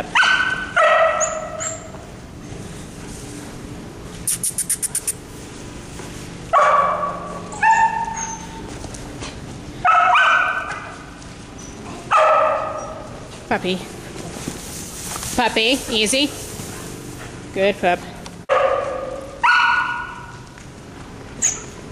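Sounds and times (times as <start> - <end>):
dog barking: 0.1 - 1.8, 6.5 - 8.4, 9.8 - 10.9, 12.1 - 13.0, 18.5 - 20.3
high chirps: 4.3 - 5.2.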